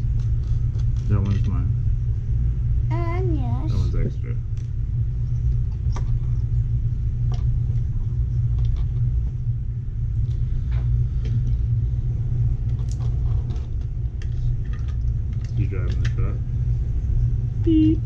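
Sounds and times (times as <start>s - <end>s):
steady low rumble: 0.0s - 18.0s.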